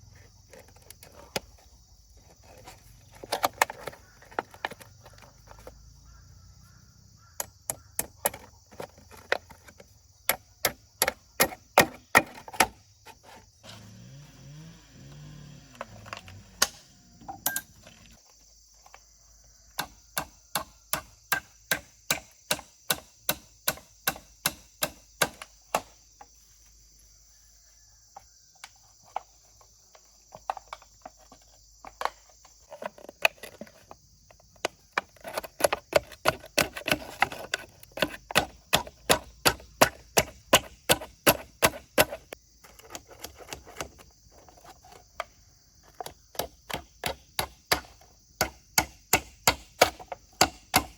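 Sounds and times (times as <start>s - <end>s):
tool striking wood: 10.3s - 12.8s, 19.8s - 25.9s, 38.0s - 42.3s, 46.4s - 50.9s.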